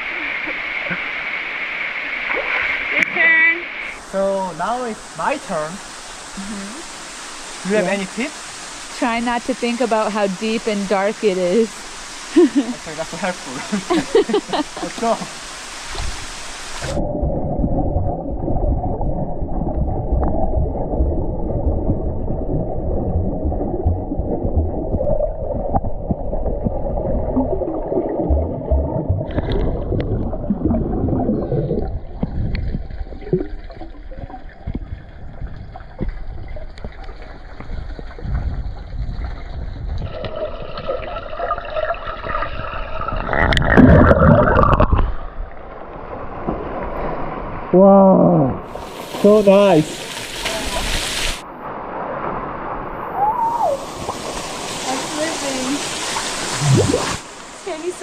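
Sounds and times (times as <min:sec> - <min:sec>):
rush of water: 0:00.0 - 0:58.0
underwater churning and gurgling: 0:14.6 - 0:47.7, 0:53.8 - 0:58.0.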